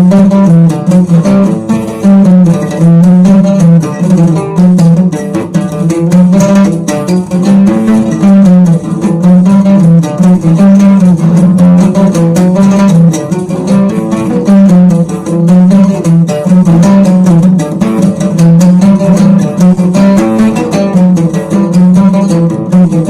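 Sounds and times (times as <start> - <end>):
plucked-string melody: 0.0 - 23.0.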